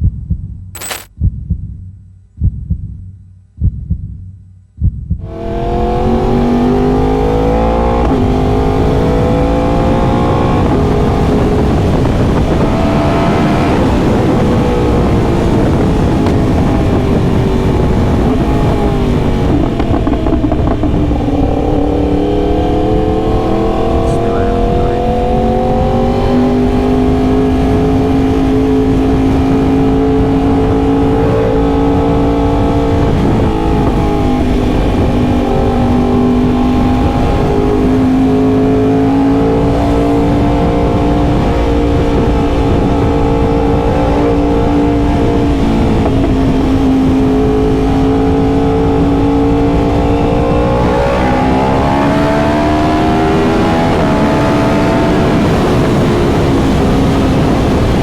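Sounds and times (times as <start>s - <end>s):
motorcycle engine running: 8.2s - 40.6s.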